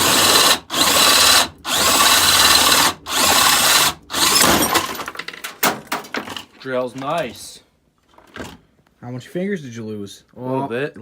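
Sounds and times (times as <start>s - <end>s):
power drill boring: 0.0s - 5.1s.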